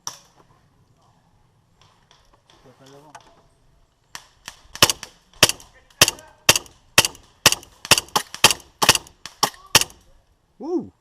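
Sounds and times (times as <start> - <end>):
airsoft gun shots: 4.5 - 10.0.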